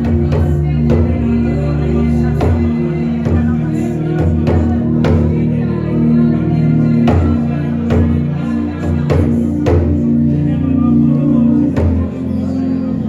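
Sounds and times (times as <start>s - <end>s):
worship music held chords: 0.0s - 13.0s
drum hits: 2.2s - 5.5s, 7.0s - 10.1s, 11.7s - 12.1s.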